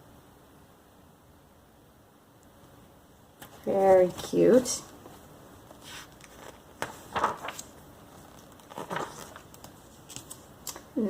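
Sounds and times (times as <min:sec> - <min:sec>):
magazine pages rustling: 0:03.4 - 0:10.9.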